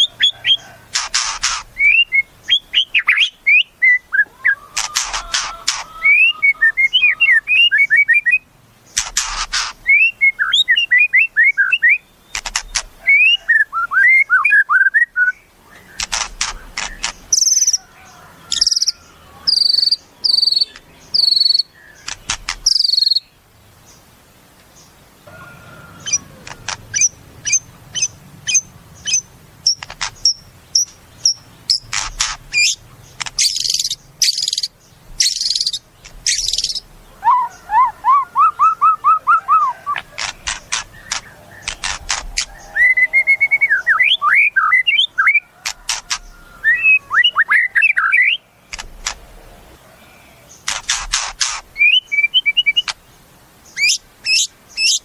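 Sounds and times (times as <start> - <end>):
songbird singing whistles: 1.2 - 8.5, 9.6 - 17.9, 18.5 - 22.0, 22.6 - 23.3, 33.4 - 41.8, 42.4 - 45.5, 46.2 - 48.5, 51.8 - 53.0, 53.8 - 55.0.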